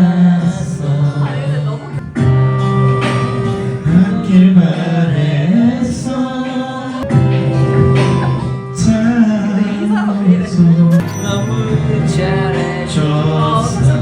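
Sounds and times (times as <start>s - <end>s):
music: 0.0s - 14.0s
man singing long held notes: 8.8s - 14.0s.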